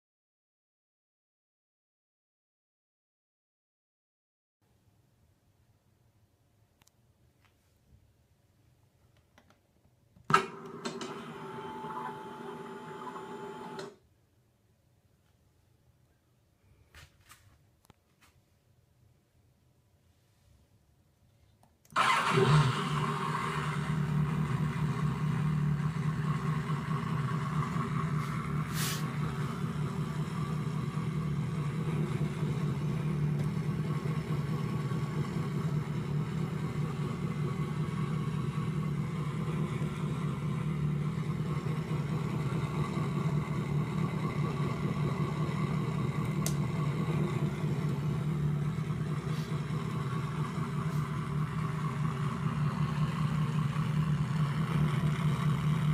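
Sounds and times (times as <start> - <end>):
motorcycle engine revving and idling: 22.0 - 55.9.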